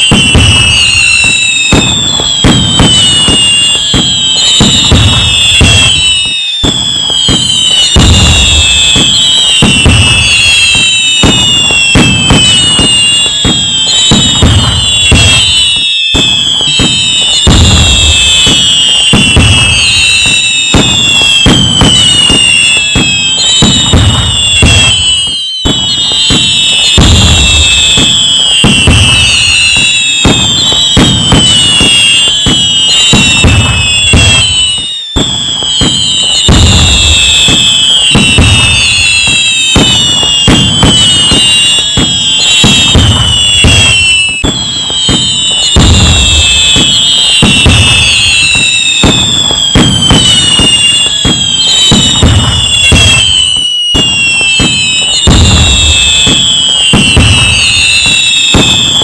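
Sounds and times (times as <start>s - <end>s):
fireworks crackling bangs and booms: 0.0s - 59.0s
whistling rockets: 0.0s - 59.0s.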